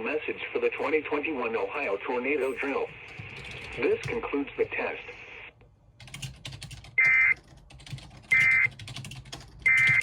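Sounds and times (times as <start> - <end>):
keyboard clicks: 6.0 - 10.0.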